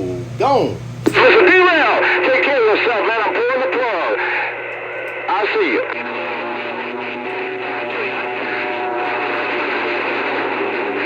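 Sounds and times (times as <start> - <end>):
radio static hiss: 0.0 - 11.0
low hum: 4.1 - 11.0.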